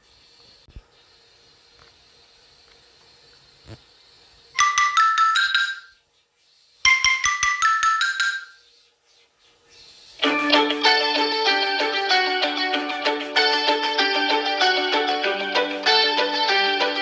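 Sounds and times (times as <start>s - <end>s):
marimba ringtone: 4.6s - 5.9s, 6.9s - 8.6s.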